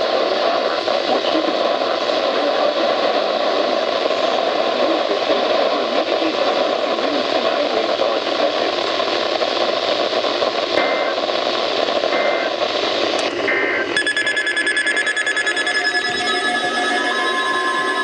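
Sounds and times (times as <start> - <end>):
radio static hiss: 0.0 - 18.0
two-tone data blips: 13.2 - 18.0
buzzy pulsing data signal: 14.0 - 18.0
steady alert tone: 14.0 - 18.0.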